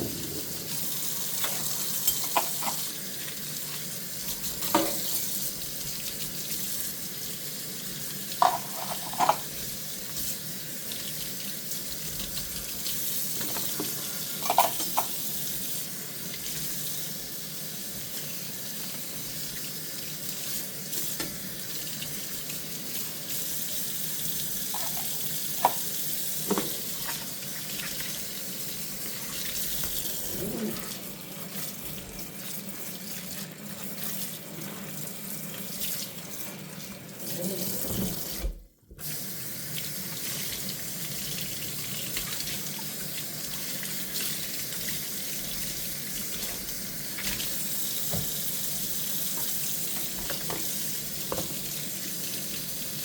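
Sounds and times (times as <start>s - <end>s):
dishware clinking: 1.5s - 2.8s, 8.4s - 9.5s, 14.4s - 15.1s
tap running into a sink: 4.5s - 5.2s, 13.4s - 15.2s, 21.1s - 21.5s, 24.7s - 28.1s, 47.2s - 48.5s, 49.3s - 51.8s.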